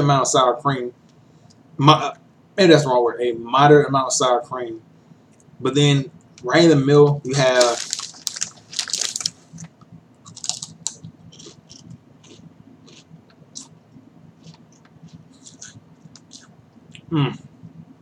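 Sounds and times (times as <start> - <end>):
faint low hum: 0.0 - 18.0
chewing potato chips: 7.3 - 13.7, 14.4 - 17.1.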